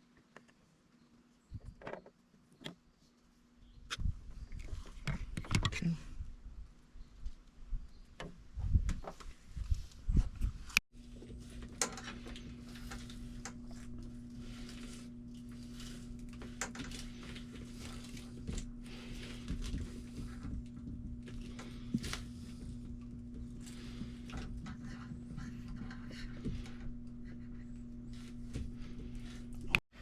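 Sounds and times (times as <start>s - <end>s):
steady low hum: 9.5s - 30.0s
cable and parts being handled: 11.0s - 27.2s.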